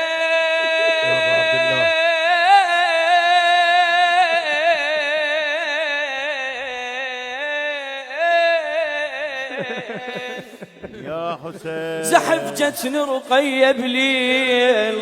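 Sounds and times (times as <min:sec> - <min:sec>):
man singing unaccompanied: 0:00.0 - 0:15.0.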